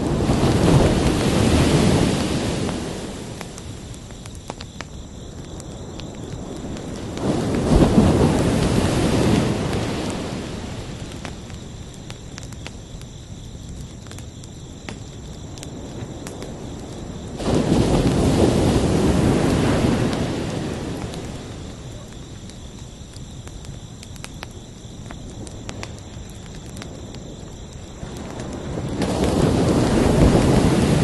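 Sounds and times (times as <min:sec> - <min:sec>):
ocean waves breaking: 0:00.0 - 0:03.4, 0:17.4 - 0:21.8, 0:29.0 - 0:31.0
crickets trilling: 0:00.0 - 0:31.0.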